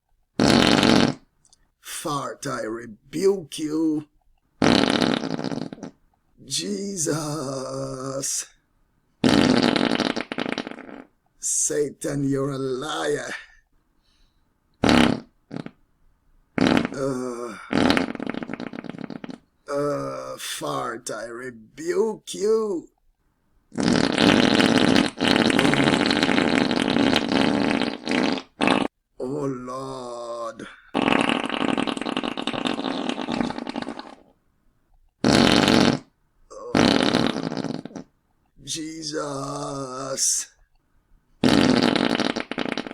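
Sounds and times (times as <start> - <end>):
man farting loudly: 0.4 - 1.3, 4.6 - 6.0, 9.2 - 11.2, 14.8 - 15.8, 16.6 - 21.1, 23.7 - 34.4, 35.2 - 38.2, 41.4 - 42.9.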